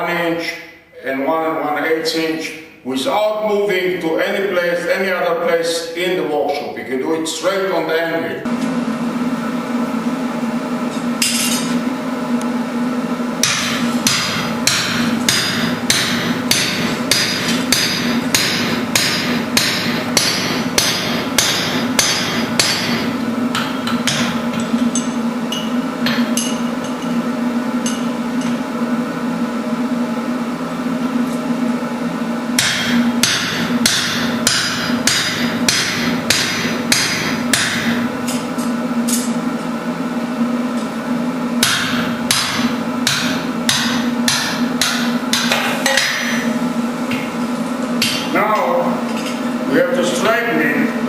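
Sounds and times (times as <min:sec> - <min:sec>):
steady low hum: 0:00.0 - 0:51.0
hammer striking hot steel: 0:13.4 - 0:27.2, 0:27.8 - 0:28.6, 0:32.6 - 0:39.4, 0:41.6 - 0:46.5, 0:48.0 - 0:48.4.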